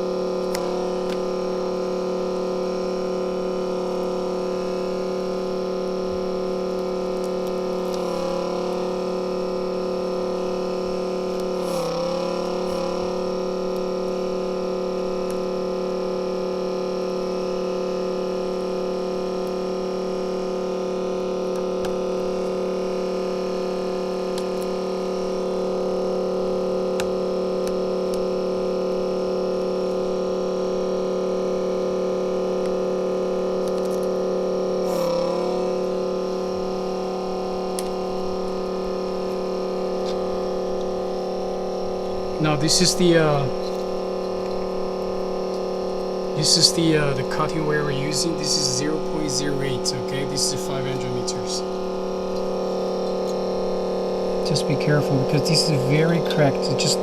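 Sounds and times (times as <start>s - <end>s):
electrical hum: 0.0s - 57.0s.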